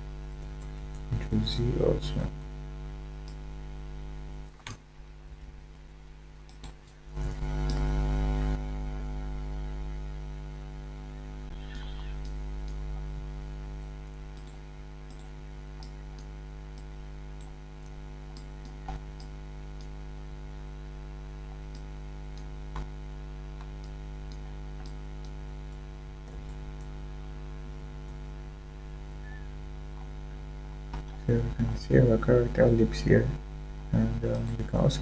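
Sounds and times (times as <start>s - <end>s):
electrical mains hum: 0.0s - 35.0s
sharp clicks: 6.5s - 7.0s, 14.3s - 20.0s.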